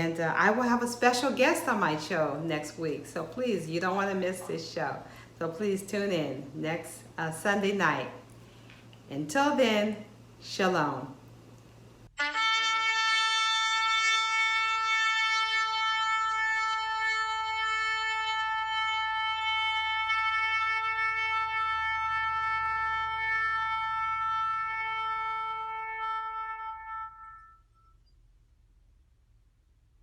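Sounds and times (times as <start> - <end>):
shofar long held note: 12.2 - 28.0.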